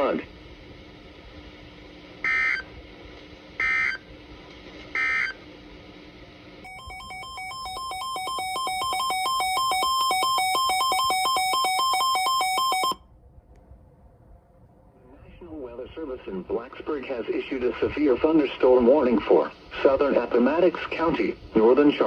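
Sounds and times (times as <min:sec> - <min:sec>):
buzzy two-pitch electronic beeping: 0:06.7 - 0:13.0.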